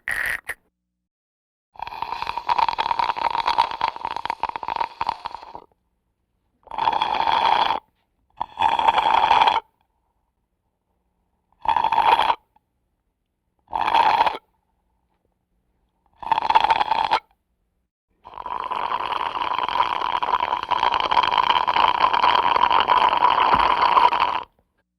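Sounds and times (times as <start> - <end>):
slurping through a straw: 0.0 - 0.6, 1.8 - 5.7, 6.6 - 9.7, 11.6 - 12.4, 13.7 - 14.5, 16.1 - 17.3, 18.2 - 24.6.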